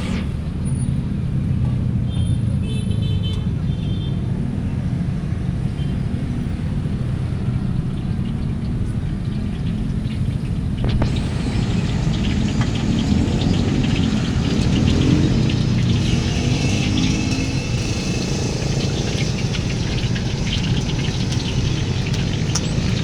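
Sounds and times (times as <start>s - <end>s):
food sizzling in a hot wok: 11.0s - 23.0s
low rumble: 11.0s - 23.0s.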